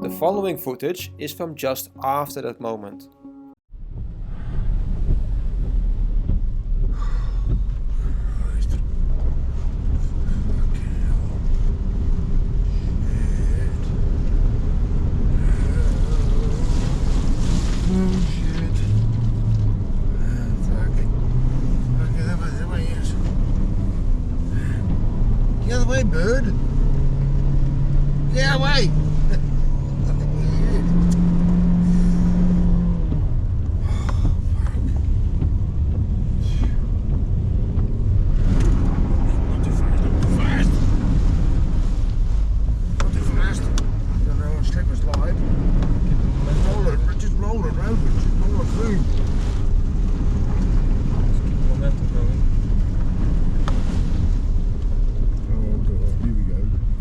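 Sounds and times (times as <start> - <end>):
car engine low rumble: 0.0 - 57.0
water rushing and splashing: 13.3 - 29.5, 30.2 - 55.5.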